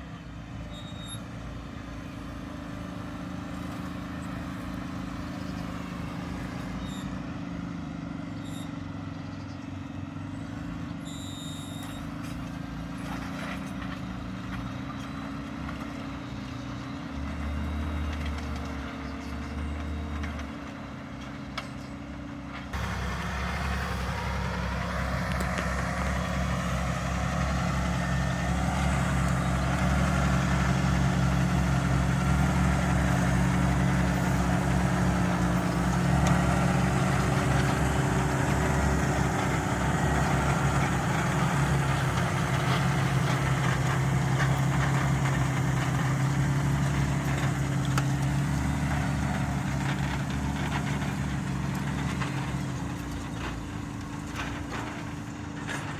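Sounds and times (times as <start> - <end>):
tractor diesel engine running: 0.0 - 55.9.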